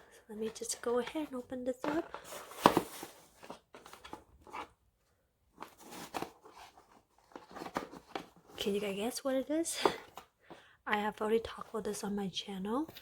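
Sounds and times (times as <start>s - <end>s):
paper and cardboard crinkling: 0.4s - 4.8s, 5.5s - 9.1s.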